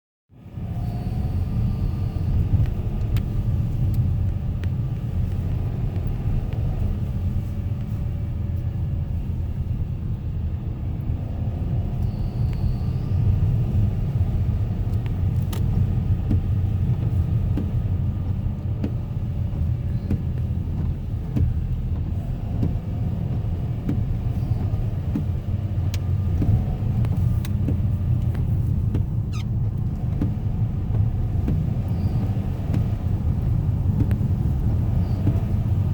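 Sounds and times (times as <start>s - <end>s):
engine and road rumble: 0.3s - 35.9s
faint high squeak: 29.3s - 29.5s.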